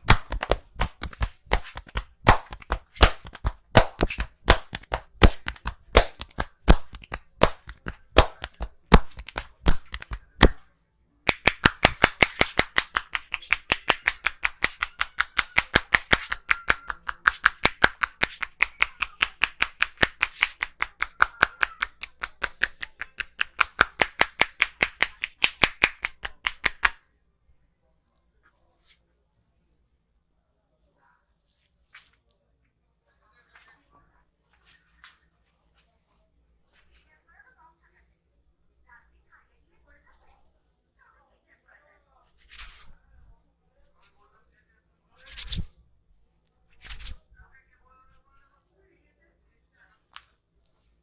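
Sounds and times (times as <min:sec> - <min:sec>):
hands slapping and tapping: 0:00.0 - 0:10.6, 0:11.3 - 0:27.0.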